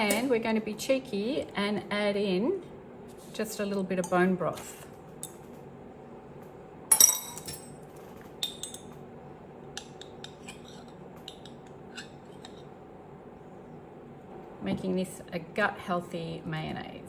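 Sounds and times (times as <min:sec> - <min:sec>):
dishware clatter: 0:06.9 - 0:07.8.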